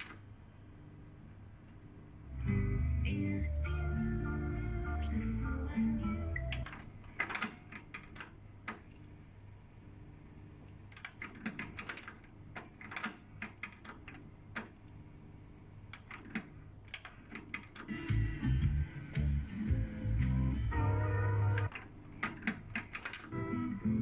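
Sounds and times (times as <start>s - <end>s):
faint low hum: 0.0s - 7.1s.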